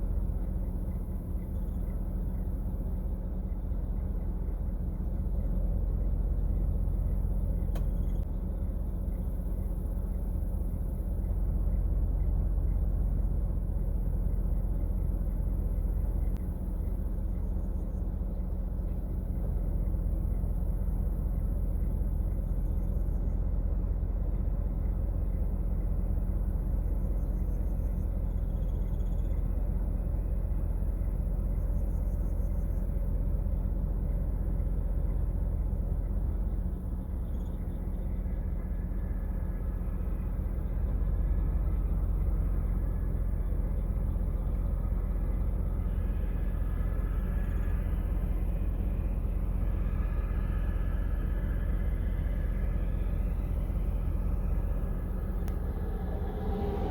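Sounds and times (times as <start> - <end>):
low vehicle rumble: 0.0 - 56.9
faint higher tones: 51.0 - 56.9.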